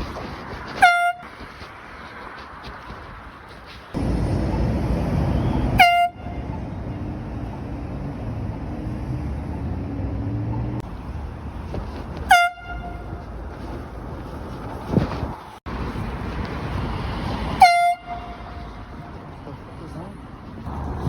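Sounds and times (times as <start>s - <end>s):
air horn blasts: 0.7s - 1.4s, 5.4s - 6.5s, 12.2s - 13.2s, 17.6s - 18.6s.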